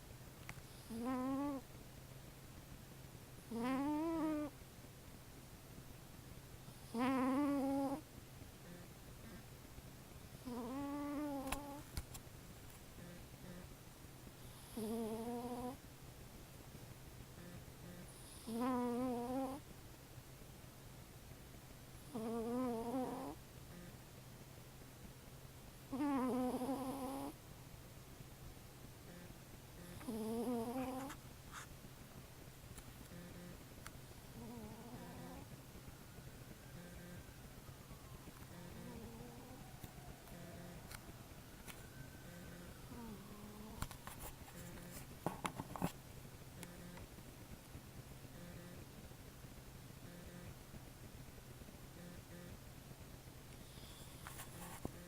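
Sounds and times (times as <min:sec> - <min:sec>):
cat snoring: 0:00.7 - 0:01.7, 0:03.5 - 0:04.5, 0:06.6 - 0:09.5, 0:10.4 - 0:11.8, 0:13.0 - 0:13.7, 0:14.4 - 0:15.8, 0:17.4 - 0:19.6, 0:22.0 - 0:24.0, 0:25.9 - 0:27.4, 0:29.1 - 0:31.2, 0:33.1 - 0:33.6, 0:34.2 - 0:35.5, 0:36.7 - 0:37.2, 0:38.5 - 0:40.8, 0:42.2 - 0:43.8, 0:48.3 - 0:48.8, 0:50.0 - 0:50.5, 0:53.6 - 0:55.0.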